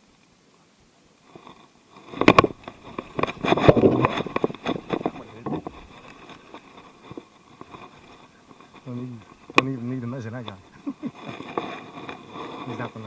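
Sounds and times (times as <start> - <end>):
clattering and rustling: 1.3 - 13.0
knocks and thumps on a kayak: 2.1 - 6.0.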